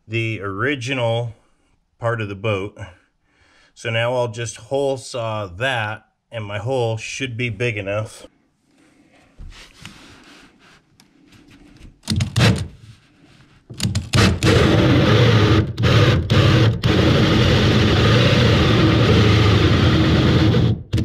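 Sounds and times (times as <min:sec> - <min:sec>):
power drill cutting with hole saw: 0:14.1 - 0:21.0.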